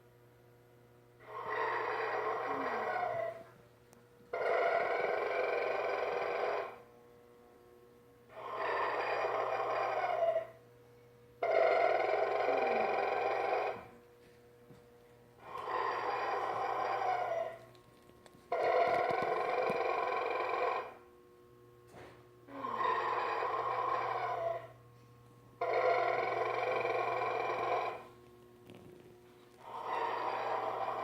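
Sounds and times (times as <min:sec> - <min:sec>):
steady low hum: 0:00.0 - 0:31.0
toy mechanical snore: 0:01.2 - 0:03.5, 0:04.3 - 0:06.8, 0:08.3 - 0:10.6, 0:11.4 - 0:13.9, 0:15.4 - 0:17.7, 0:18.5 - 0:21.0, 0:22.5 - 0:24.7, 0:25.6 - 0:31.0.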